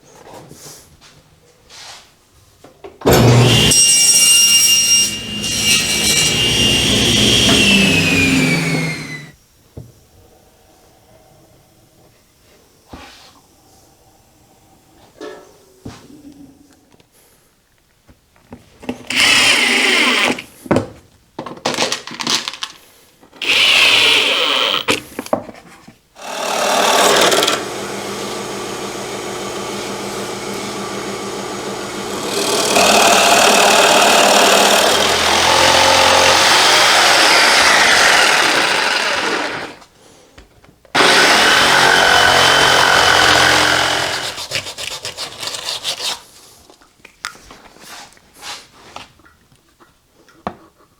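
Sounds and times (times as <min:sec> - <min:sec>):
power tool running: 0:03.1 - 0:09.4, 0:23.4 - 0:24.9, 0:26.2 - 0:39.8, 0:41.0 - 0:44.5.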